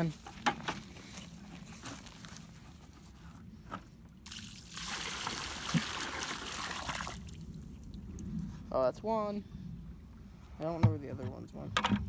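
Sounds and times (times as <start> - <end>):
water pouring into a pond: 4.2 - 8.2.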